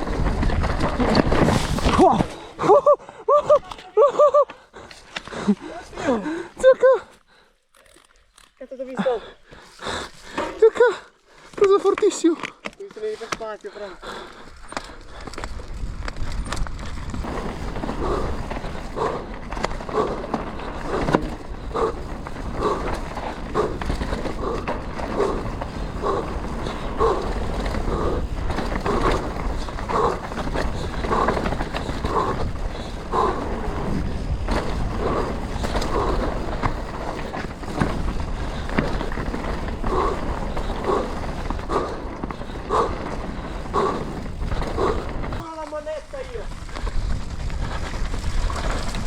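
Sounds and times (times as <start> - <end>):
wind rumble on microphone: 0.0 - 2.3, 14.7 - 49.0
bike tyre noise on trail: 0.0 - 49.0
bike knocks and rattles: 14.6 - 45.4.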